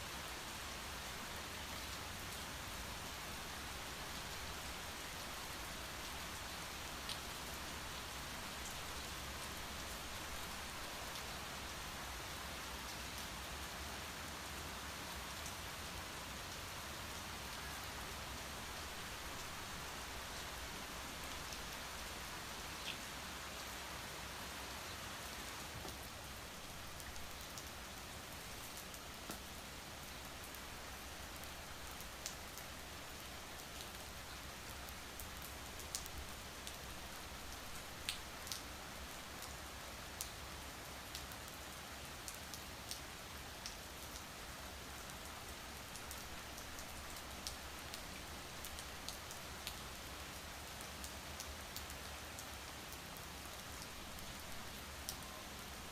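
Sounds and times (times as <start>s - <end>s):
steady rain hiss: 0.0s - 55.9s
raindrop ticks on a surface: 38.1s - 38.6s.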